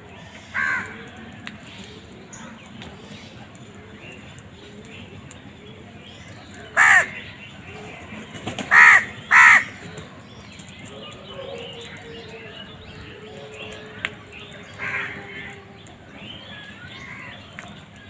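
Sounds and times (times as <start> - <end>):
crow cawing: 0.6 - 1.0, 6.8 - 7.2, 8.7 - 9.8, 14.8 - 15.5.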